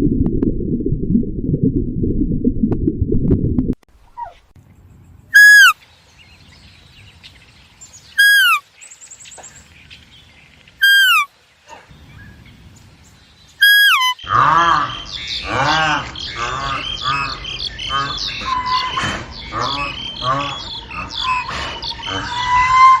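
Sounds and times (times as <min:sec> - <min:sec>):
loud bird calls: 0:05.3 - 0:07.4, 0:08.1 - 0:10.1, 0:10.8 - 0:12.5, 0:13.5 - 0:23.0
chorus of bird calls: 0:05.4 - 0:12.6, 0:13.4 - 0:23.0.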